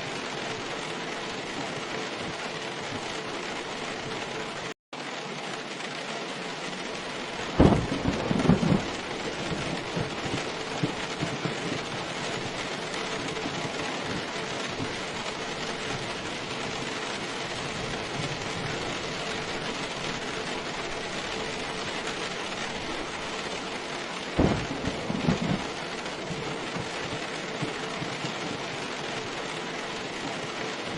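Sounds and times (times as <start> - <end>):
steady rain falling: 0.0 - 30.9
thunder crack and rumble: 6.6 - 30.9.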